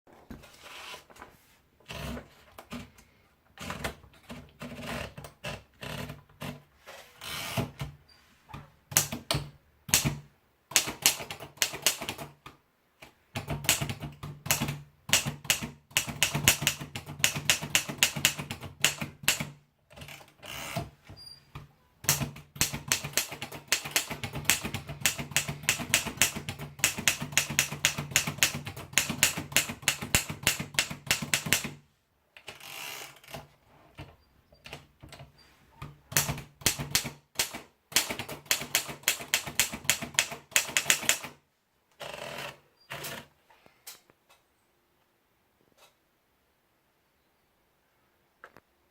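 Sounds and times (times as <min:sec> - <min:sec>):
typewriter typing: 0:08.9 - 0:12.4, 0:13.3 - 0:20.9, 0:22.0 - 0:31.8, 0:36.1 - 0:41.4.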